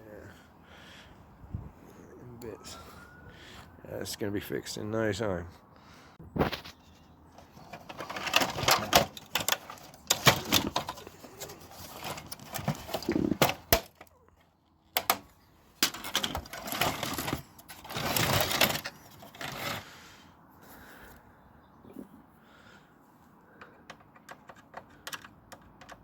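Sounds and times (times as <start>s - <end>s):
parts rattling: 6.4s - 20.0s
printer parts clattering and cracking: 7.4s - 19.8s, 23.6s - 26.0s.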